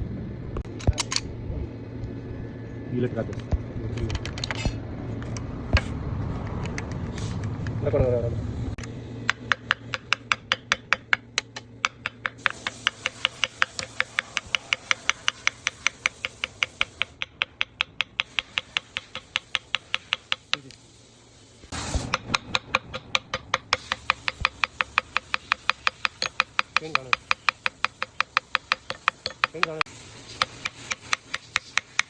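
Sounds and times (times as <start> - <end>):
rapid sharp clicking: 8.8 - 20.8, 22.1 - 32.0.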